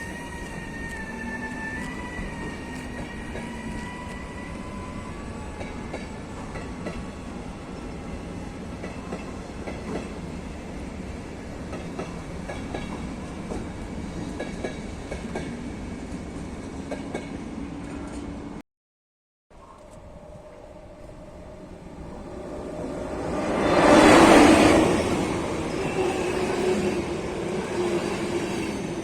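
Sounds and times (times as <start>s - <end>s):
electric locomotive whine: 0.0s - 10.7s, 19.6s - 29.0s
train wheels clicking on rail joints: 11.7s - 15.6s.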